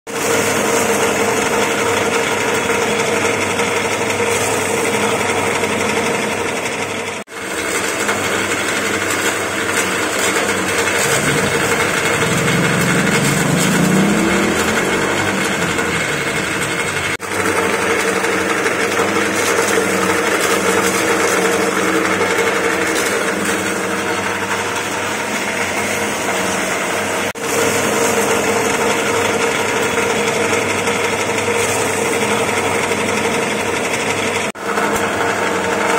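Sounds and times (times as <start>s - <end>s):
mill machine humming: 0.1s - 35.9s
short rising whine: 10.4s - 17.4s.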